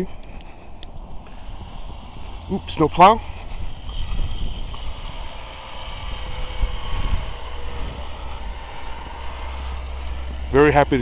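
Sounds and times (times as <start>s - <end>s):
snowplow truck driving by: 1.2s - 11.0s.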